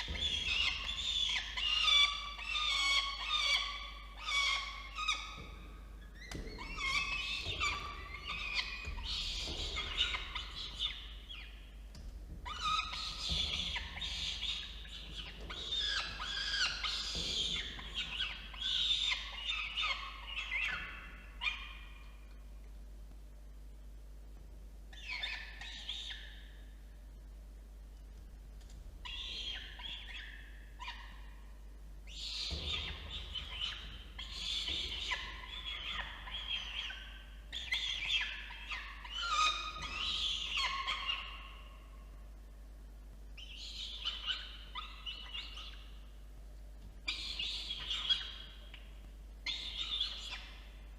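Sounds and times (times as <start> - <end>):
falcon chicks begging calls: 0.0 - 5.5, 6.2 - 11.5, 12.5 - 21.8, 32.1 - 41.8.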